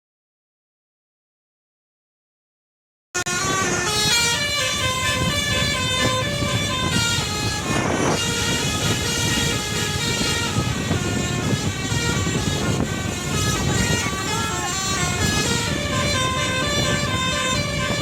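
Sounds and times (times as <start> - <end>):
bus horn playing melody: 3.2 - 18.0.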